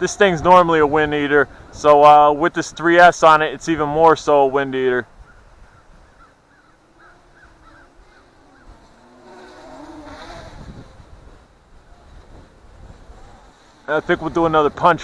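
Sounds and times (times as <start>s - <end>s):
gusty wind: 0.0s - 15.0s
drone propellers buzzing: 3.6s - 15.0s.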